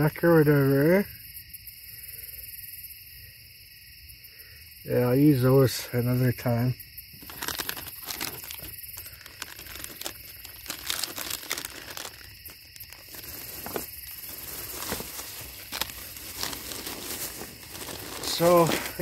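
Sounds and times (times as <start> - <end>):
packaging crinkling: 7.1 - 19.0.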